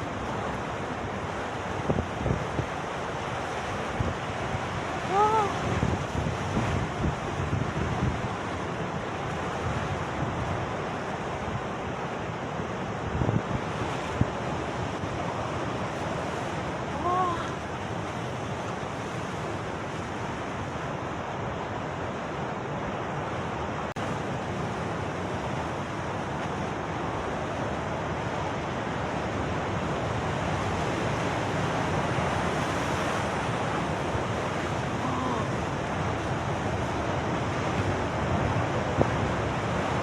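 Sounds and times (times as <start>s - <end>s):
surf breaking on rocks: 29.4s - 40.0s.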